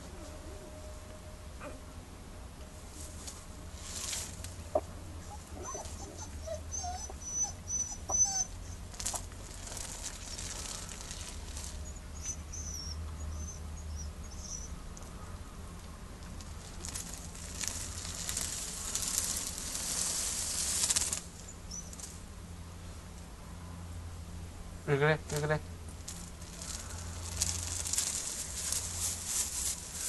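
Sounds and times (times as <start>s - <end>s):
steady low hum: 0.0s - 30.0s
puppies squealing and whining: 5.2s - 9.2s, 11.8s - 14.7s.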